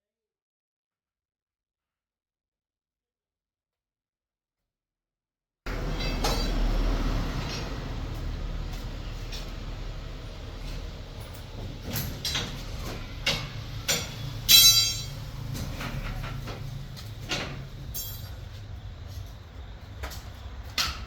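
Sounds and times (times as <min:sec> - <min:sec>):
low mechanical hum: 0:05.7 - 0:21.0
loud ringing metal clank: 0:10.6 - 0:18.6
sharp metal knocks and clicks: 0:11.2 - 0:18.4.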